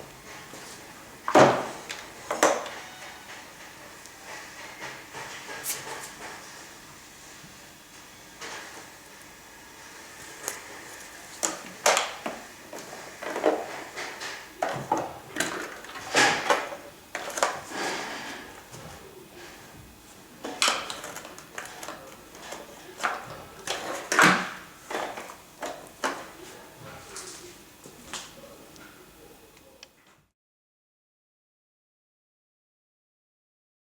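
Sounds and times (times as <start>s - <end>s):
vacuum attachments clicking and knocking: 11.4s - 18.8s, 20.4s - 27.2s.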